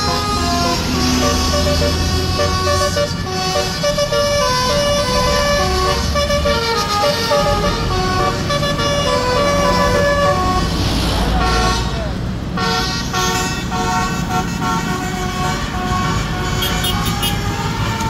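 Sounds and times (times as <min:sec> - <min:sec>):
musical air horn melody: 0:00.0 - 0:18.0.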